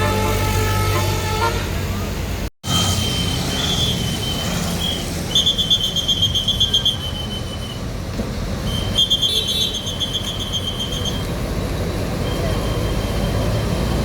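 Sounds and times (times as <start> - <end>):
bus horn playing a tune: 0.0 - 2.2
engine and traffic rumble: 0.0 - 14.0.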